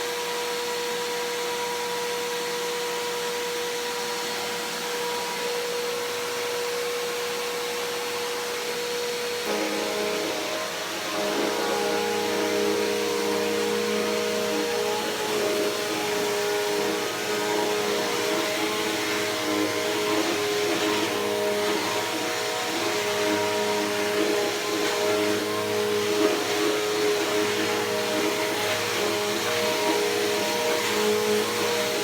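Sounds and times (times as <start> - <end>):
upright vacuum running on carpet: 0.0 - 32.0.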